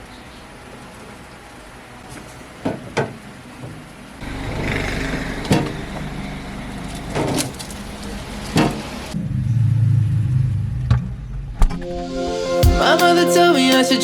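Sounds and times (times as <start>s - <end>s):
low vehicle-like rumble: 4.2s - 11.7s.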